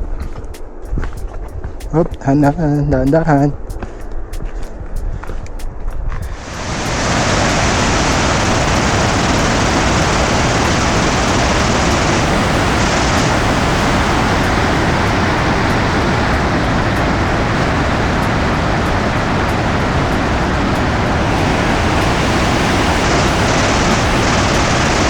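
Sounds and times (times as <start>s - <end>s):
stream water rushing: 6.4s - 25.0s.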